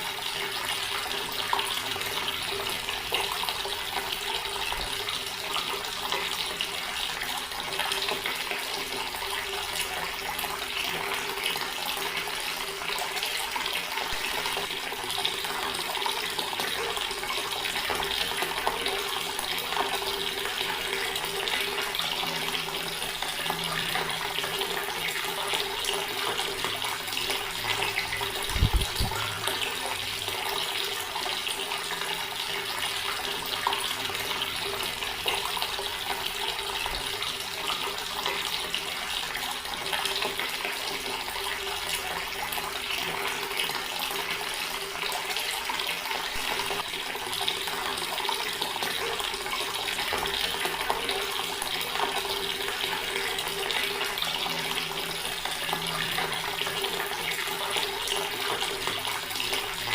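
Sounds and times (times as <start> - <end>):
tap water splashing into stone basin: 14.0 - 30.6.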